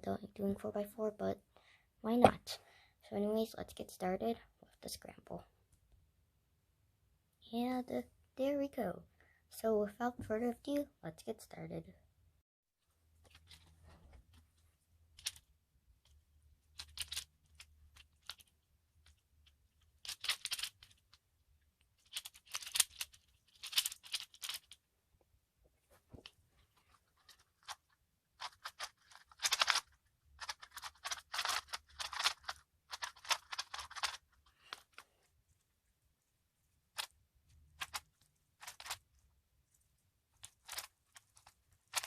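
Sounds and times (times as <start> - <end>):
plastic puzzle cube clicking: 16.8 - 18.5, 19.9 - 21.1, 22.0 - 24.8, 28.4 - 35.0, 37.8 - 39.0, 40.4 - 42.0.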